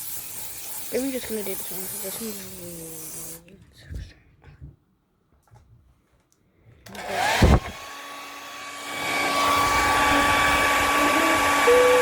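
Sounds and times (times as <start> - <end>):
hair dryer motor whine: 6.9 - 12.0.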